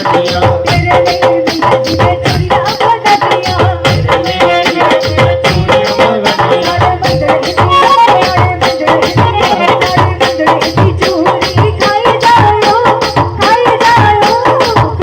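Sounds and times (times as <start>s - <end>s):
steady drum beat: 0.0s - 15.0s
band melody: 3.2s - 10.6s.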